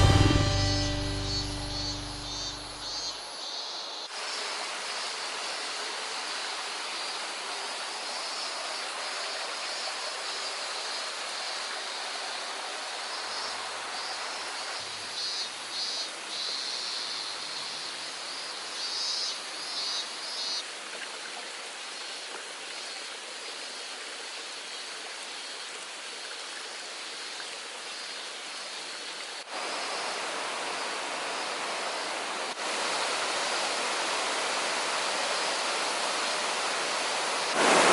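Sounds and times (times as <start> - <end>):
waterfall rushing: 0.0 - 3.0, 29.4 - 37.9.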